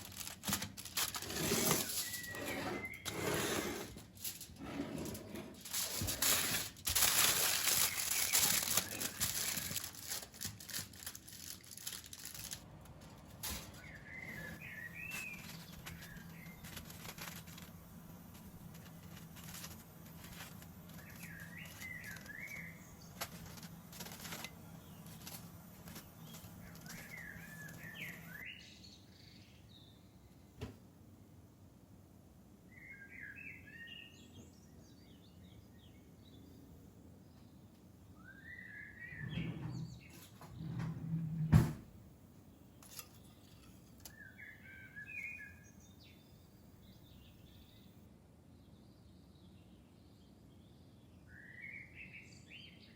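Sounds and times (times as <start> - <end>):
small bird chirping: 18.4 - 30.1.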